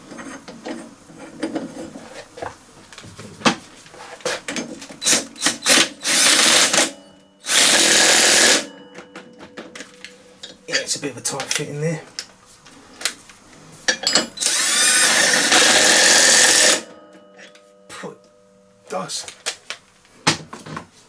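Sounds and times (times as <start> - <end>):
impact wrench firing: 5.0 - 8.7, 14.4 - 16.9.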